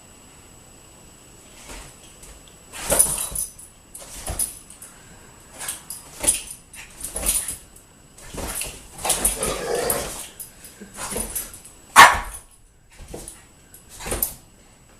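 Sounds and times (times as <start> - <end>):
dogs scuffling: 5.5 - 14.4.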